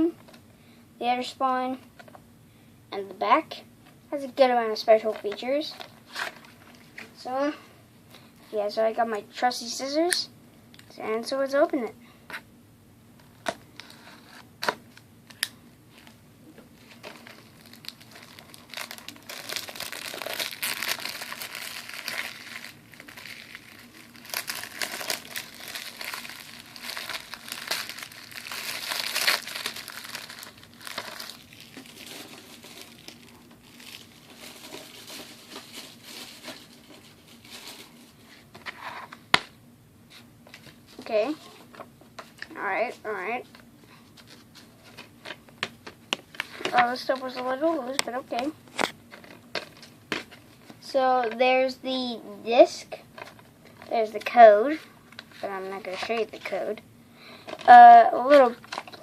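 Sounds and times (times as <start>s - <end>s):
plastic wrap crinkling and tearing: 16.8s - 38.2s, 57.5s - 59.0s.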